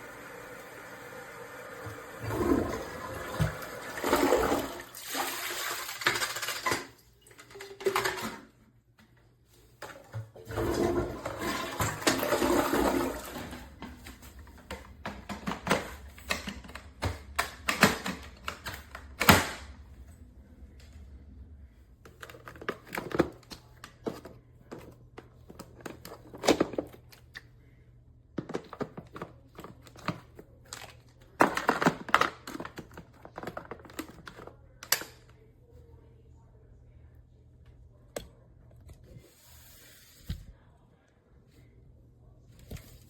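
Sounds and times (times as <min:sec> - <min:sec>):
water pouring and splashing: 0:02.2 - 0:07.0.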